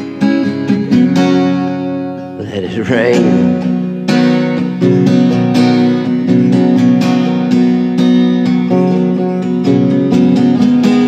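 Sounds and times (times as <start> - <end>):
acoustic guitar strumming chords: 0.0 - 11.0.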